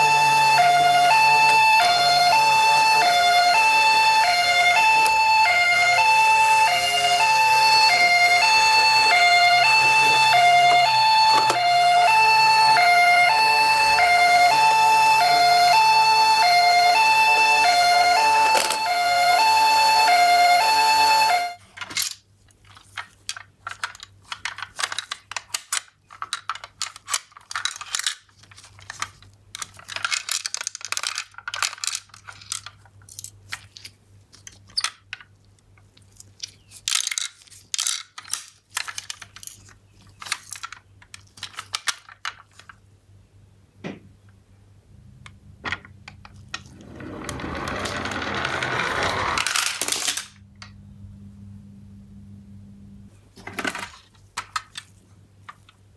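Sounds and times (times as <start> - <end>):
toy cars clicking and clattering: 15.7 - 20.0, 20.6 - 42.9, 45.2 - 50.4, 53.4 - 55.8.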